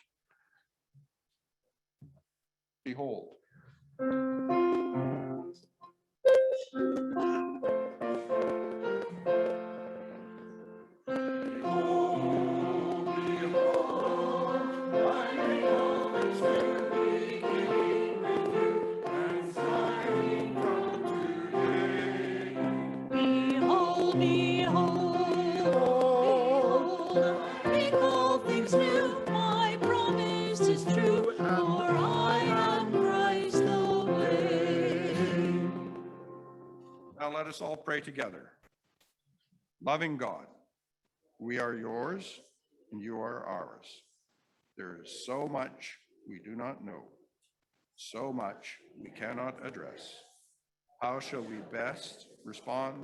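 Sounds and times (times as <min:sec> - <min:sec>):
voices singing a hymn: 0:11.2 - 0:36.8.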